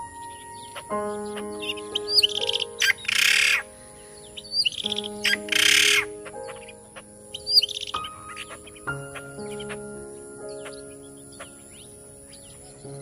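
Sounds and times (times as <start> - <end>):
hornbill calls: 0.6 - 3.6, 4.4 - 9.9.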